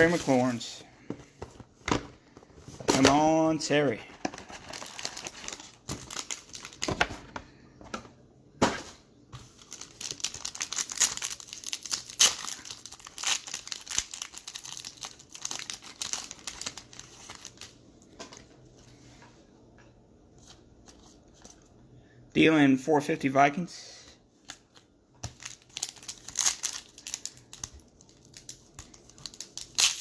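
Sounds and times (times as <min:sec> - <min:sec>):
plastic and foil wrappers crinkling: 0:00.0 - 0:00.7, 0:03.0 - 0:07.3, 0:09.4 - 0:18.4, 0:24.5 - 0:30.0.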